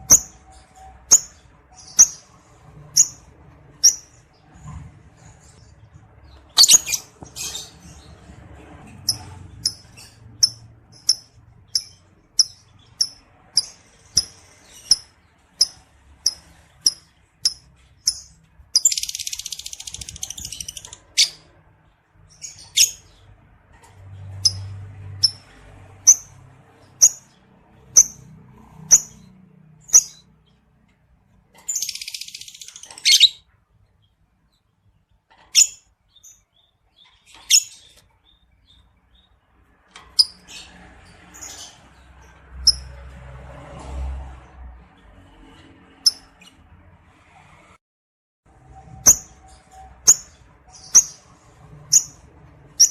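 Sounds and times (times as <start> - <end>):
lovebird chirping: 0.0 - 4.2, 6.3 - 8.1, 9.1 - 21.4, 22.3 - 23.2, 27.0 - 28.3, 29.9 - 30.3, 31.6 - 33.5, 51.9 - 52.2
lovebird chattering trill: 6.6 - 7.6, 9.1 - 21.4.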